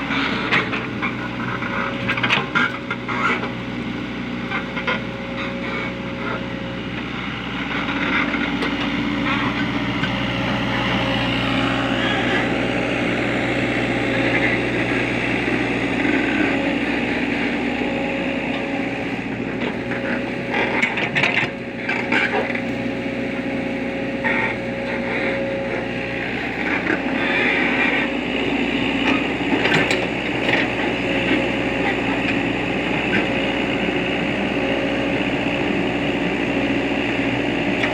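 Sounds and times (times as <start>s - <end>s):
excavator diesel engine running: 0.0s - 37.9s.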